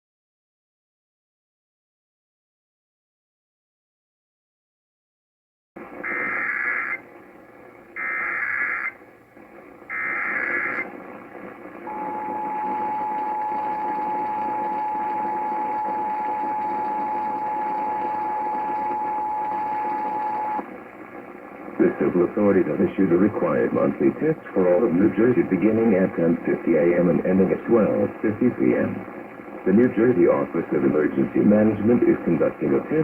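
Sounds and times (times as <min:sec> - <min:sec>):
radio hiss: 0:05.8 - 0:33.0
data tone bursts: 0:11.9 - 0:20.6.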